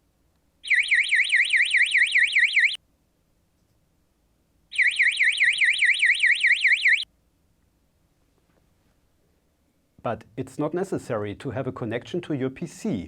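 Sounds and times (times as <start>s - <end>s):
warbling electronic alarm tone: 0.6s - 2.8s, 4.8s - 7.0s.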